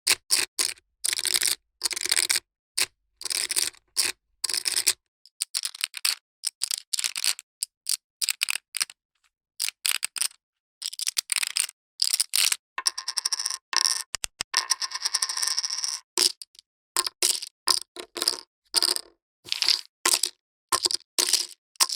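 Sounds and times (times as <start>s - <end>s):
poker chips clicking: 9.6s - 16.6s, 17.3s - 21.9s.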